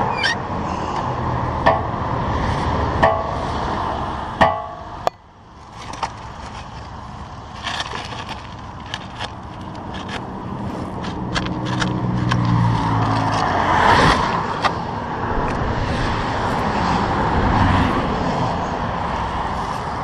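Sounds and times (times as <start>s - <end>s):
vehicle rushing past: 0.0s - 5.0s, 11.9s - 20.0s
traffic engine hum: 0.0s - 20.0s.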